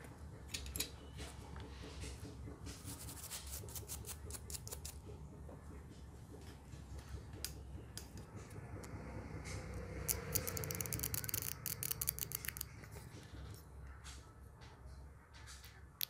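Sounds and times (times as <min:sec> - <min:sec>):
hand tools clicking and scratching: 0:02.7 - 0:05.1, 0:10.0 - 0:13.7.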